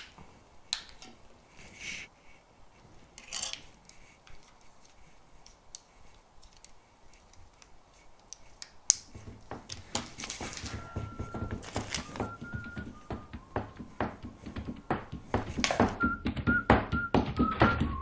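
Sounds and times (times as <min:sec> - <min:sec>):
plastic toy parts clicking: 0:00.0 - 0:01.2, 0:03.2 - 0:09.1.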